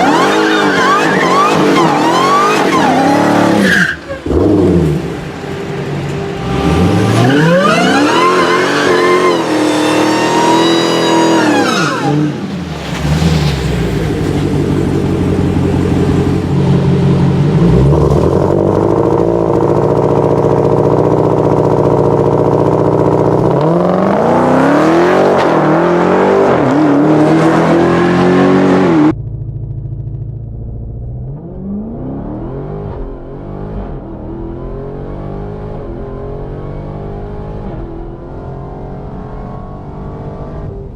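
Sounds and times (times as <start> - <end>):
supercharged car engines revving: 0.0 - 40.9
supercharger whine: 28.1 - 35.1.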